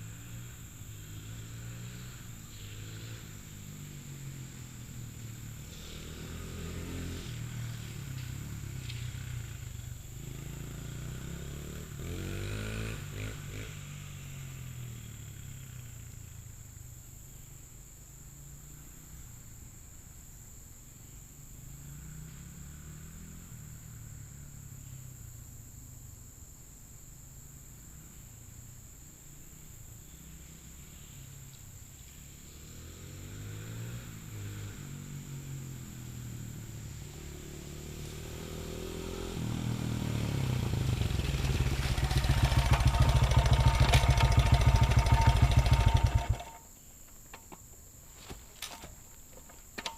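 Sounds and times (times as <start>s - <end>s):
dirt bike engine revving: 10.2s - 14.0s, 37.0s - 46.6s.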